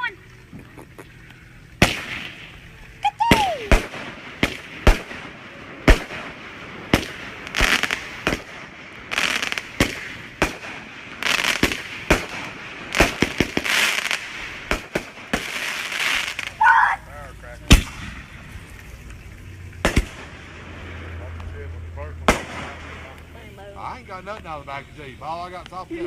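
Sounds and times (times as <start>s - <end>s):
fireworks crackle: 0.0s - 26.0s
fireworks bangs: 1.8s - 16.7s, 17.5s - 23.5s.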